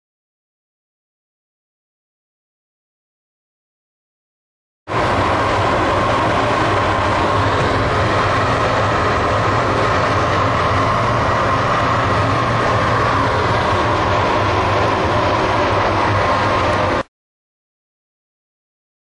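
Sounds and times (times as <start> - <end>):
machinery noise with low hum: 4.9 - 17.1.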